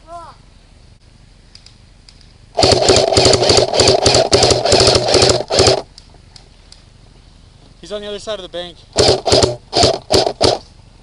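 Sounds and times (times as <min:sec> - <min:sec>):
airsoft gun firing full auto: 0:02.6 - 0:05.9, 0:09.0 - 0:10.7.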